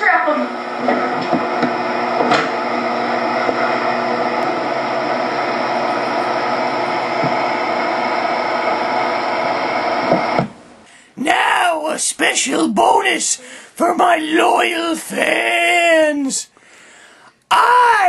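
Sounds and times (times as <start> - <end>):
loud whirring motor hum: 0.0 - 10.5.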